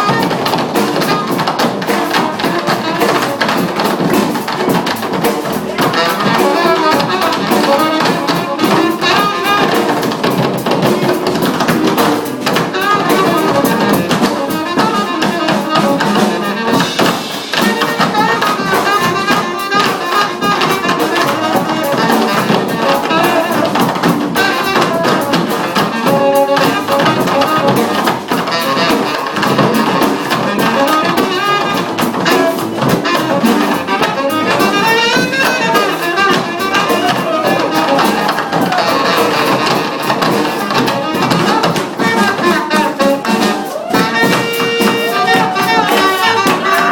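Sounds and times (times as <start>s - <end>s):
drum kit: 0.0s - 46.9s
funk band playing live: 0.0s - 46.9s
horn line: 0.0s - 46.9s.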